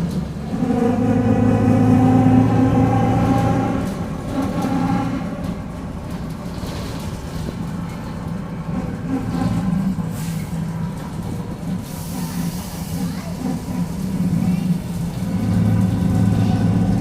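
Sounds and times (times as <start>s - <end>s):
bus running from inside: 0.0s - 17.0s
differential growl: 0.5s - 5.3s.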